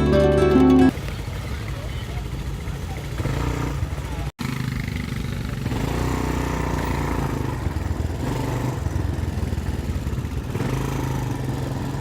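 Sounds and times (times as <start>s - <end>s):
atv engine running: 0.0s - 12.0s.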